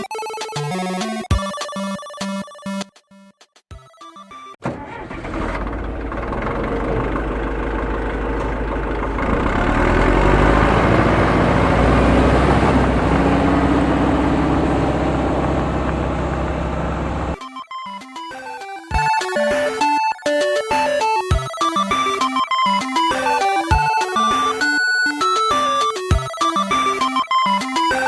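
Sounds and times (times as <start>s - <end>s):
engine running: 4.6s - 17.4s.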